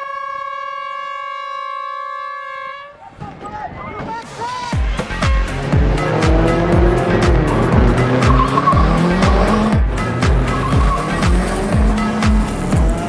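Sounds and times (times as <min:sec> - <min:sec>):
electronic music with kick drum: 0:04.8 - 0:13.0.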